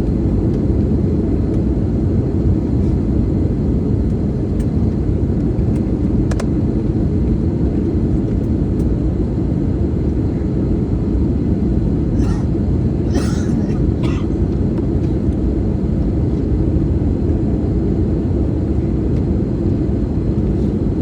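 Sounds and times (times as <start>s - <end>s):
airliner engines rumbling: 0.0s - 21.0s.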